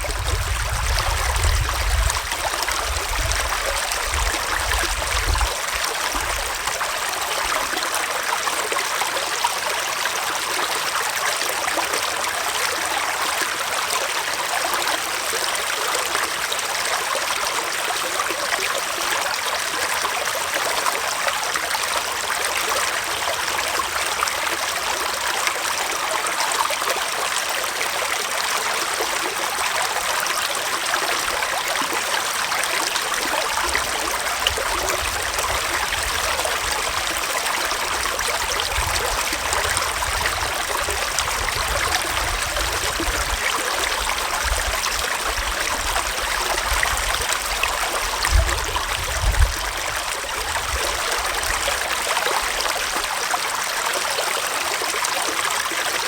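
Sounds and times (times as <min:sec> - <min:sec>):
stream trickling: 0:00.0 - 0:56.0.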